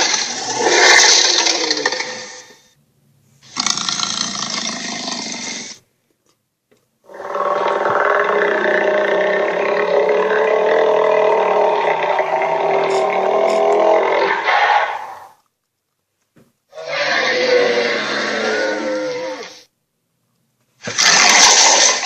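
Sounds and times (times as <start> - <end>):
monster roar: 0.0 - 2.6, 3.4 - 5.8, 7.1 - 15.4, 16.7 - 19.6, 20.8 - 22.0.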